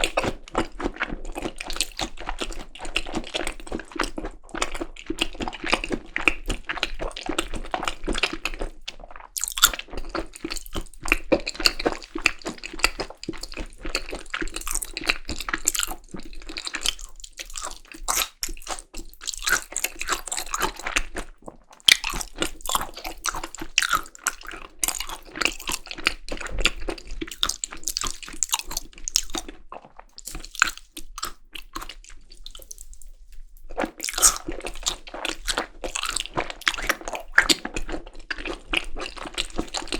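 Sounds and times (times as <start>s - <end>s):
chewing mouth clicks: 0.0s - 39.9s.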